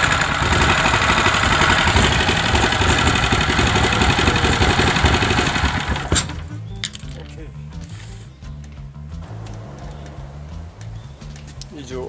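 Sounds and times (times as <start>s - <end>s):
small engine running: 0.0s - 7.0s, 9.2s - 11.9s
quiet background music: 6.3s - 12.0s.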